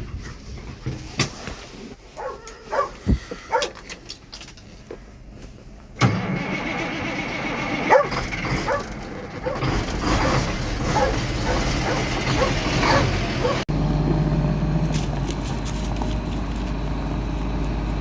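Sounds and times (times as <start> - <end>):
diesel truck engine idling: 7.0 - 18.0.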